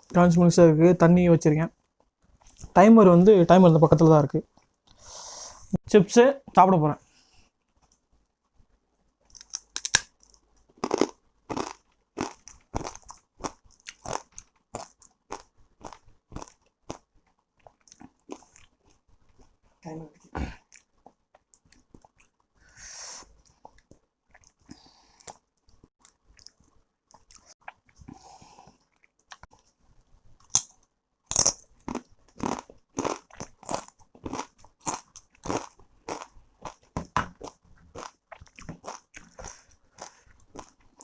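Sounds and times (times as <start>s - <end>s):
person crunching chip: 9.3s - 17.0s, 31.3s - 36.8s, 37.4s - 41.0s.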